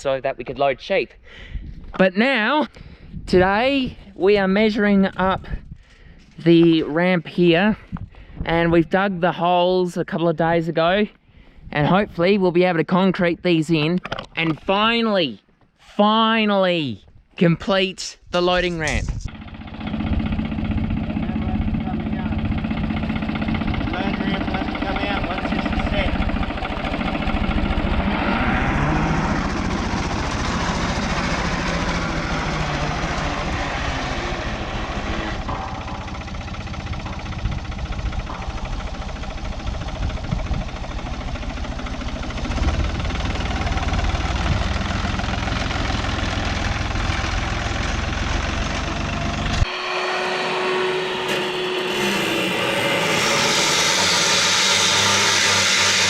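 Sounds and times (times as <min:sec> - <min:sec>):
engine running: 0:18.7 - 0:56.0
steady hum: 0:28.8 - 0:42.9, 0:49.6 - 0:56.0.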